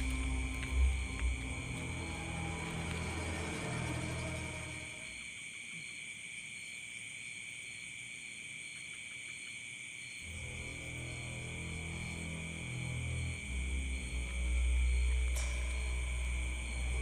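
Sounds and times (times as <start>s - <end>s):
eerie background music: 0.0s - 5.3s, 10.2s - 17.0s
night insects chirping: 0.0s - 17.0s.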